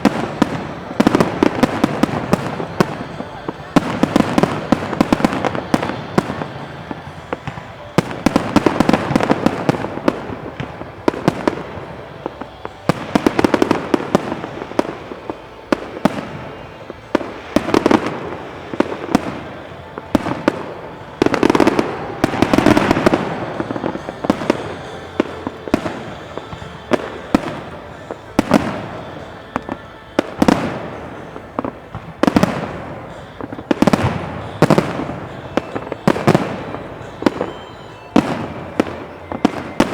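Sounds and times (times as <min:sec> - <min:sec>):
fireworks bursting with bangs: 0:00.0 - 0:39.9
fireworks crackling: 0:00.0 - 0:39.9.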